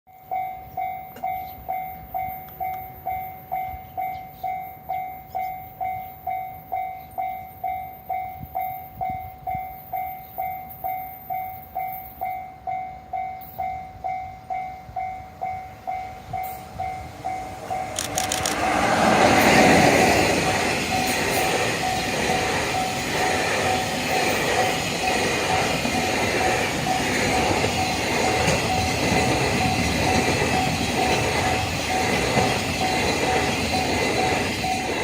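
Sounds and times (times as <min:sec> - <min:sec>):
level-crossing bell dinging: 0:00.1 - 0:35.0
approaching train: 0:00.2 - 0:35.0.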